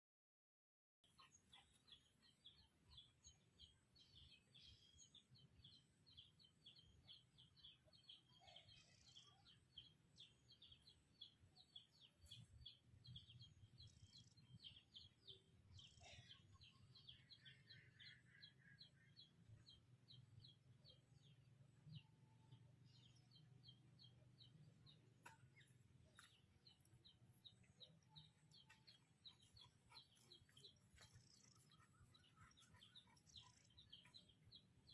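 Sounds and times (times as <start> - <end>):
small bird chirping rapidly: 5.0 - 34.9.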